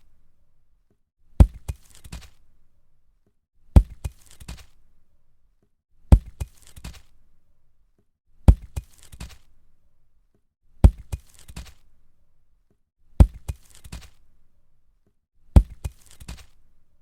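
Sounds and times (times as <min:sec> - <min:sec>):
concrete block thudding on ground: 0:01.4 - 0:02.4, 0:03.8 - 0:04.8, 0:06.1 - 0:07.1, 0:08.5 - 0:09.5, 0:10.8 - 0:11.8, 0:13.2 - 0:14.2, 0:15.6 - 0:16.6.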